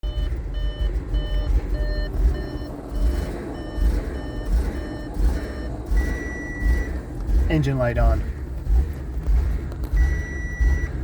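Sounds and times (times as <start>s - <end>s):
short electronic beep: 0.0s - 7.0s, 10.0s - 11.0s
car engine idling roughly: 0.0s - 11.0s.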